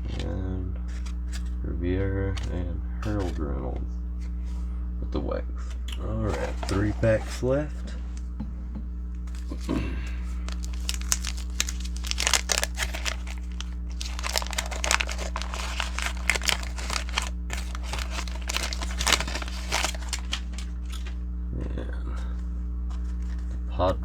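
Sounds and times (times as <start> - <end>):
wax paper wrapper crinkling: 0.0 - 1.6, 6.2 - 7.4, 9.2 - 21.3, 22.2 - 23.6
steady low hum: 0.0 - 24.0.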